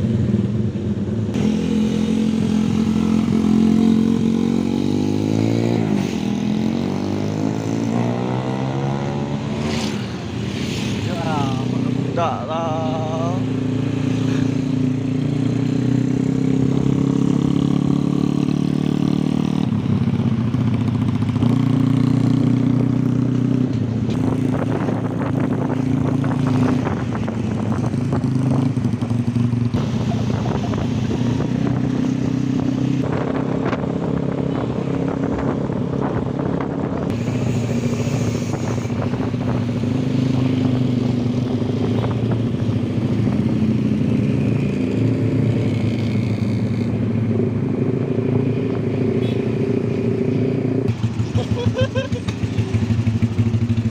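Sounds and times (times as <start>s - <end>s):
motorcycle engine running: 11.3s - 53.9s.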